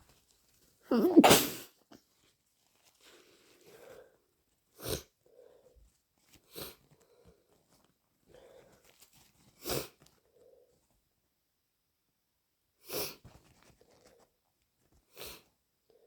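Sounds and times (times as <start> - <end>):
congested nose sniffles: 0.9 - 1.7, 6.5 - 6.8, 12.8 - 13.2
soft breathing: 3.0 - 4.4, 5.1 - 9.3.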